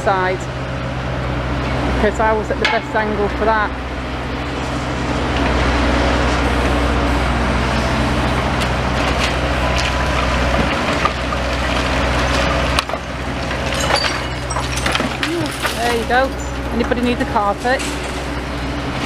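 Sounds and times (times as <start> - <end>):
excavator diesel engine: 0.0 - 19.0
debris knocks and crunches: 8.6 - 19.0.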